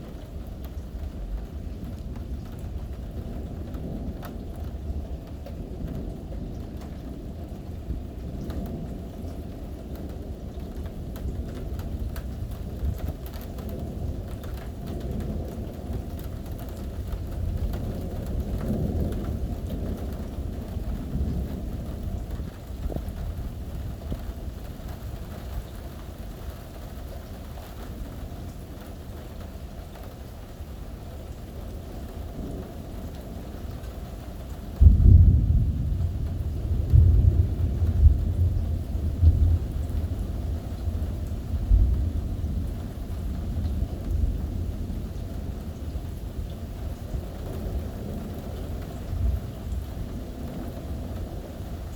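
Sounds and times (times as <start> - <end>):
raindrops ticking close by: 0.0 - 51.9
steady rain: 0.0 - 51.9
rolling thunder: 31.5 - 51.9.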